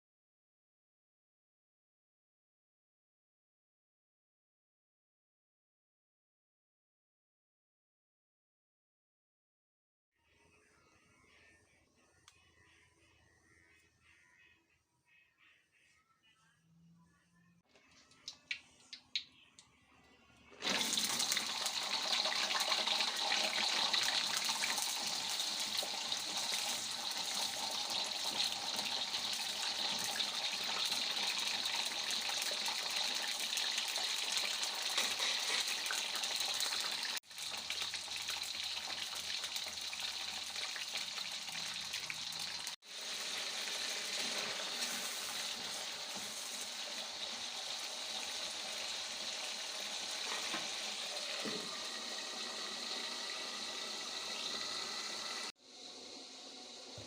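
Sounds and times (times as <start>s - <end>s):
water running from tap into sink: 20.6s - 55.5s.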